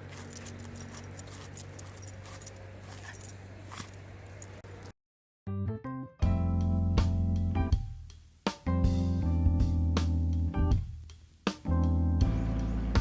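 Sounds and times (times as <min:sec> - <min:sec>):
dog collar tags jingling: 0:00.0 - 0:04.7.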